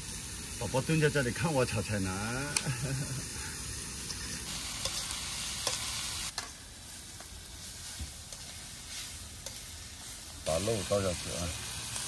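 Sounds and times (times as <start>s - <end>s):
vegetables sizzling in a pan: 0.0s - 12.0s
spatula scraping a pan: 7.2s - 10.2s.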